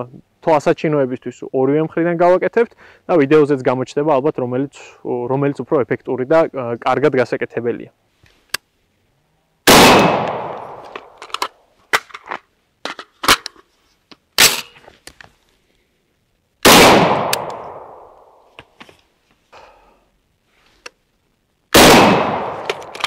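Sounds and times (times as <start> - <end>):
rifle shots: 9.7 - 11.2, 16.6 - 18.2, 21.7 - 23.0
metallic clacks of magazine change: 10.5 - 15.3, 22.5 - 23.0.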